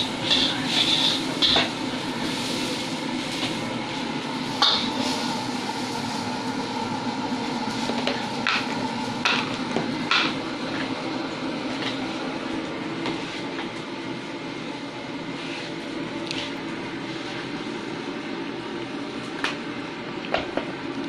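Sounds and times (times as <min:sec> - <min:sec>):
frying sizzle in a pan: 0:00.0 - 0:21.0.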